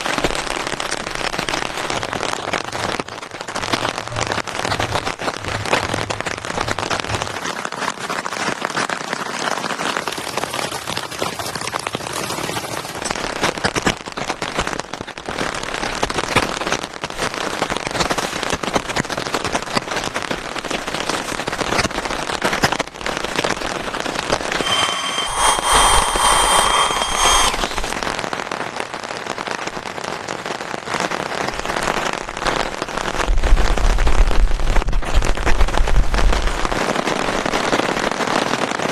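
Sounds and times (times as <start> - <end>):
heavy rain falling: 0.0 - 23.4
steady tone: 24.5 - 28.0.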